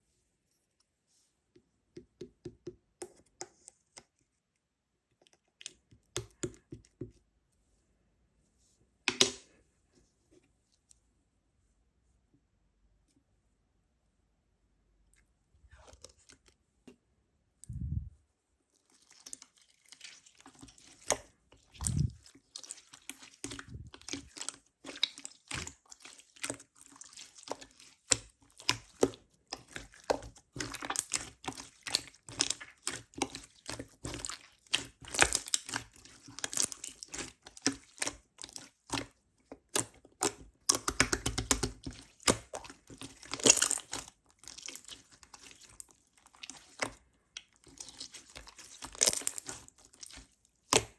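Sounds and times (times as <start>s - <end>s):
slime crackling and popping: 21.8s - 39.0s, 39.6s - 46.9s, 47.7s - 50.9s.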